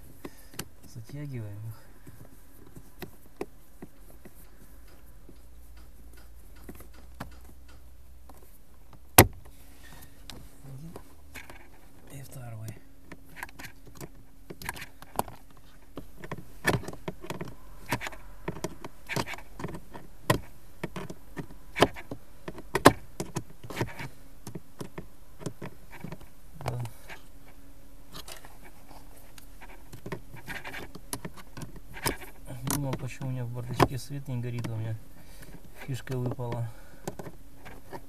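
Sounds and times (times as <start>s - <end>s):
faint steady hum: 0.0s - 38.0s.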